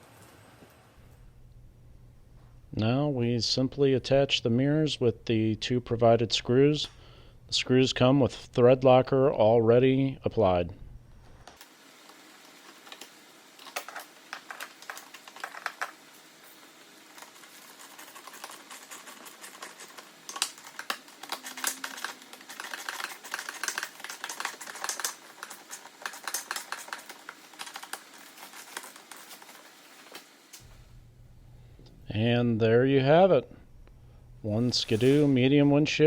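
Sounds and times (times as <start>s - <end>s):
hand tools clicking and tapping: 17.2s - 30.2s.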